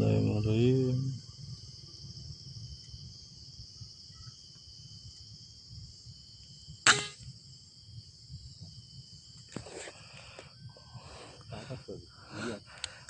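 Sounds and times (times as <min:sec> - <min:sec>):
insects chirring: 0:00.0 - 0:13.0
air rifle shot: 0:06.8 - 0:07.2.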